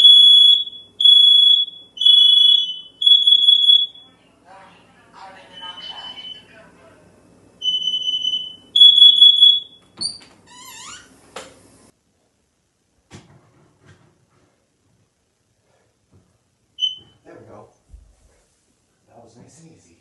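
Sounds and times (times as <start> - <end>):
smoke alarm beep: 0.0 - 4.2, 5.5 - 6.5, 7.6 - 10.2, 16.8 - 17.2.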